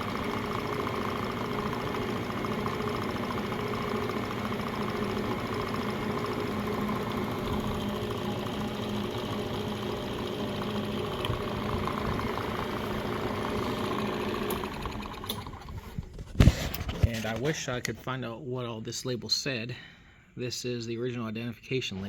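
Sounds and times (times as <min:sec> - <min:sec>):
brake lathe mechanical hum: 0:00.0 - 0:16.1.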